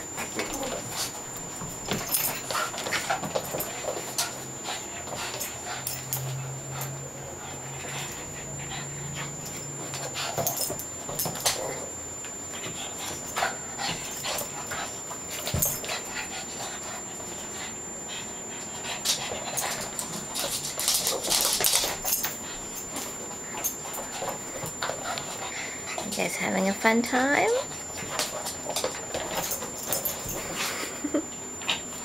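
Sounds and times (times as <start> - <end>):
high-pitched whine: 0.0 - 32.0.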